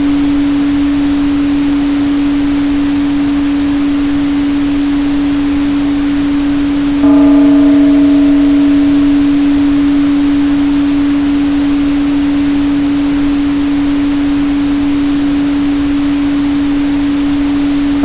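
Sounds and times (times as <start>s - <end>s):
steady pure tone: 6.7s - 18.0s.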